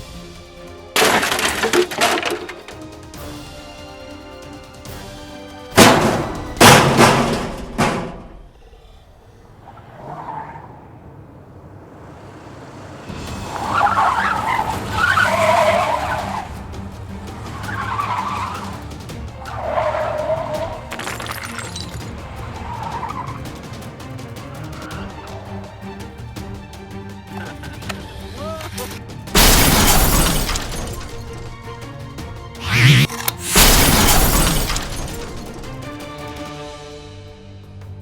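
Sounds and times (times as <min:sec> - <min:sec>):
tyres skidding: 0:00.0 - 0:38.0
loud crashing knocks: 0:01.0 - 0:02.9, 0:05.7 - 0:08.5, 0:29.4 - 0:31.5, 0:33.4 - 0:36.0.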